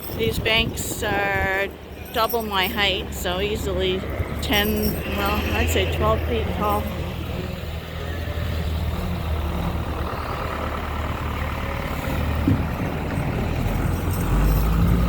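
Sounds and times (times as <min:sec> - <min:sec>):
snow-clearing machine engine droning: 0:03.0 - 0:15.0.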